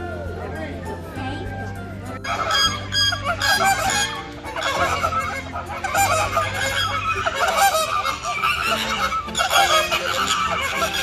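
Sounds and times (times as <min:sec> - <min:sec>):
flock of birds honking: 0:02.2 - 0:11.0.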